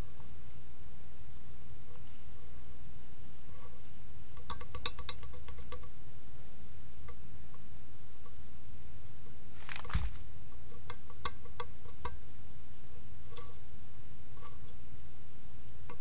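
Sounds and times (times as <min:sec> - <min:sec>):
low steady rumble: 0:00.0 - 0:16.0
irregular metallic ticks: 0:04.4 - 0:06.0.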